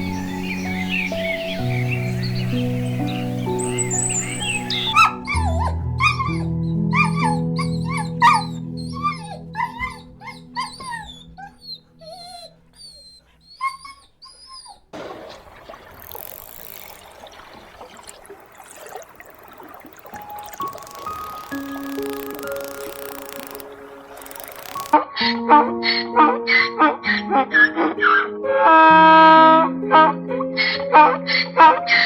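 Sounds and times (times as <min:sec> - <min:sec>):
steady outdoor hiss: 0:00.0 - 0:05.1, 0:15.1 - 0:25.0
soft piano music: 0:00.0 - 0:13.0, 0:19.6 - 0:32.0
dog whining and yipping: 0:03.4 - 0:15.0, 0:19.9 - 0:25.0.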